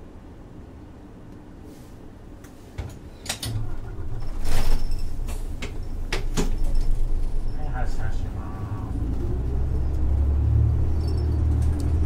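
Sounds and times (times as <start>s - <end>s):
diesel engine rumble: 0.0s - 12.0s
bus door clicks and clunks: 2.4s - 8.0s.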